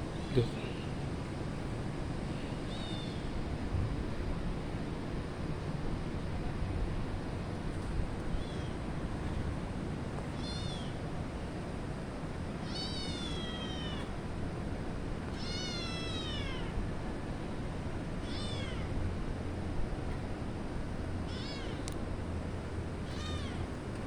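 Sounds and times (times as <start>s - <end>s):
low background hum: 0.0s - 24.0s
cat meowing: 12.6s - 14.1s, 15.3s - 16.8s, 18.2s - 18.9s, 21.3s - 21.8s, 23.0s - 23.7s.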